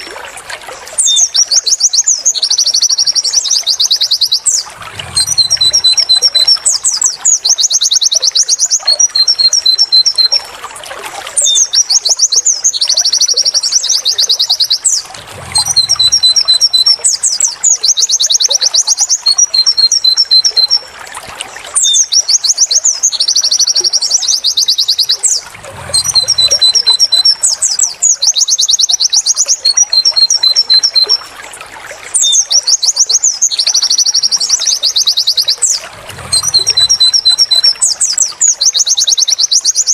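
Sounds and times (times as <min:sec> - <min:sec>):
bird singing high trills: 0:11.4 - 0:20.9, 0:21.8 - 0:31.2.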